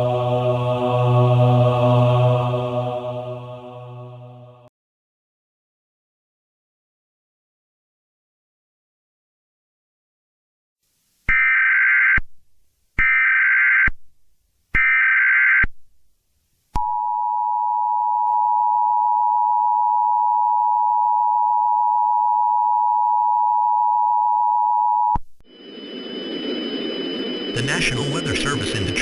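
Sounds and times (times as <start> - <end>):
two-tone attention signal: 18.2 - 29.0
alert data bursts: 25.5 - 29.0.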